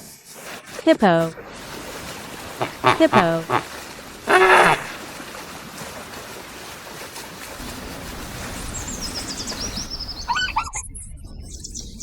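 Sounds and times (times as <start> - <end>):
water washing: 1.7 - 6.4
hippopotamus call: 2.6 - 5.0.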